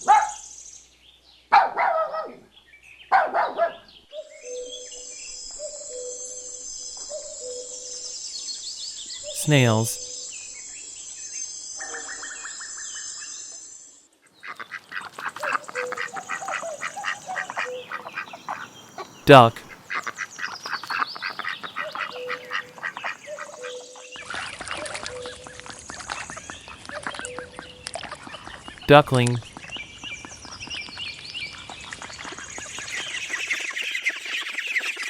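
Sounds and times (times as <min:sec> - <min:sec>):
birds chirping: 0:14.7 - 0:25.6.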